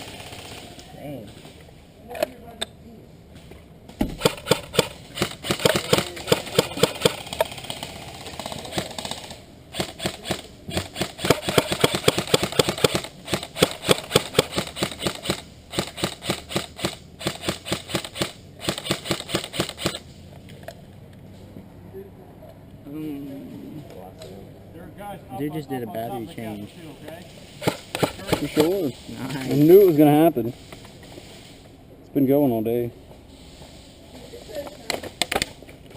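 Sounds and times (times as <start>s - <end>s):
airsoft rifle rapid fire: 0.0s - 0.7s, 4.1s - 20.0s, 27.6s - 28.8s.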